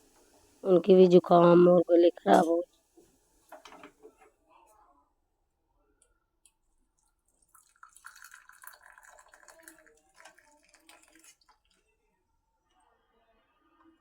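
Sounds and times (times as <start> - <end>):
liquid trickling through strainer: 7.3 - 11.8.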